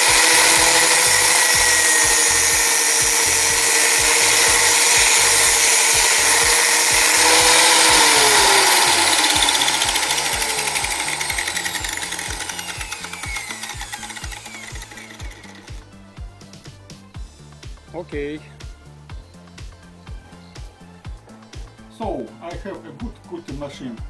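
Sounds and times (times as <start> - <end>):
angle grinder cutting metal: 0.0 - 15.9
grinder disc spinning down: 0.0 - 16.0
background music with steady beat: 0.0 - 24.0.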